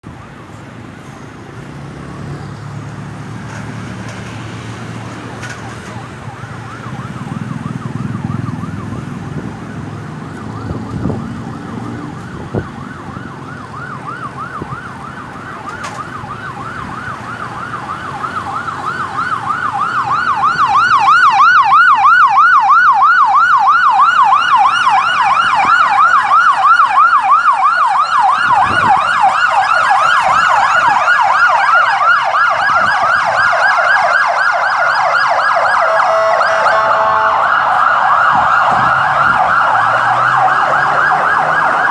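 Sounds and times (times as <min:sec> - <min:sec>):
ambulance siren yelping: 0:00.0 - 0:41.9
low road rumble: 0:00.0 - 0:41.9.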